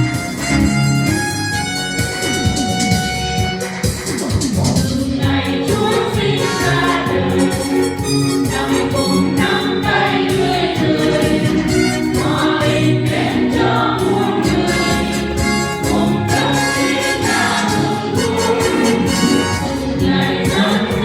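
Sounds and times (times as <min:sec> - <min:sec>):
instrumental accompaniment with beat: 0:00.0 - 0:21.0
choir singing a hymn: 0:05.1 - 0:21.0.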